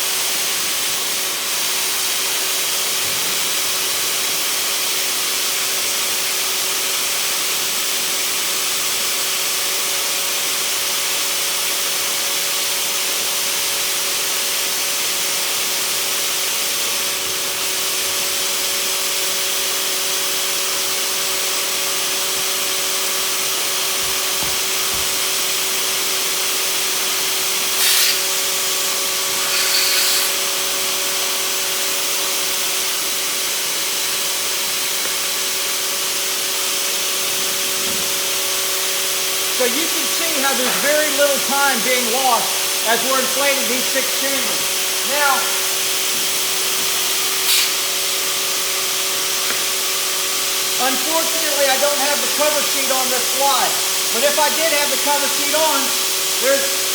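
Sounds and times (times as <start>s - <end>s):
electric air pump hissing and humming: 0.0s - 56.9s
loud burst of hiss: 23.4s - 31.8s, 38.3s - 56.9s.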